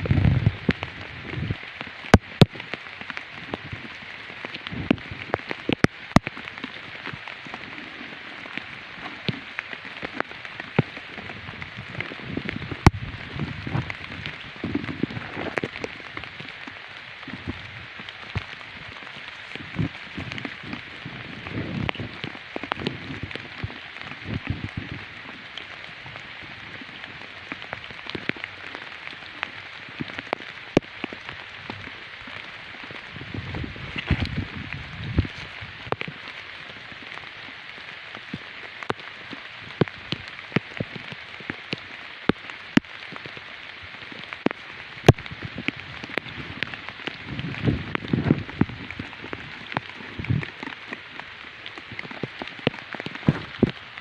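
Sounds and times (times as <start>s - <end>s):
steady rain pattering: 0.0s - 54.0s.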